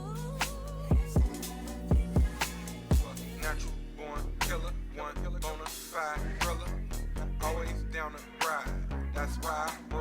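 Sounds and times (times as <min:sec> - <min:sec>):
wavering melody line: 0:00.0 - 0:06.2
hip-hop background music: 0:00.0 - 0:10.0
heavy kick-drum beat: 0:00.9 - 0:03.4.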